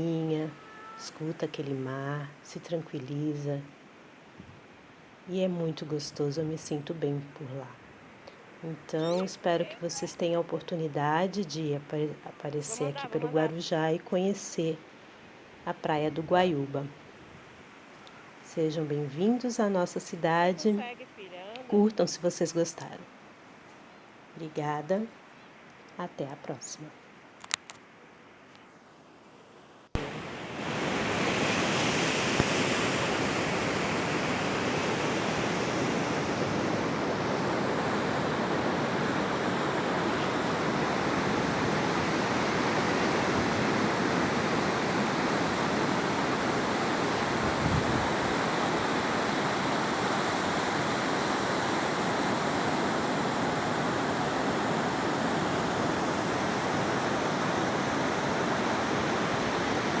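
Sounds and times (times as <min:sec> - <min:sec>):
ocean waves washing on beach: 0:29.9 - 1:00.0.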